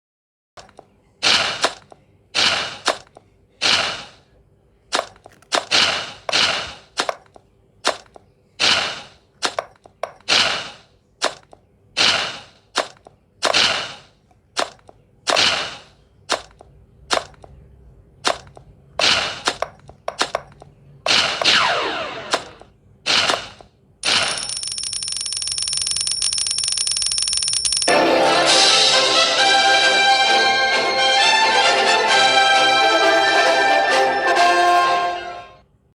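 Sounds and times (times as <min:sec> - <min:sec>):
falling whine: 0:21.1 - 0:22.7
sharp gunshot-like bangs: 0:21.1 - 0:24.3.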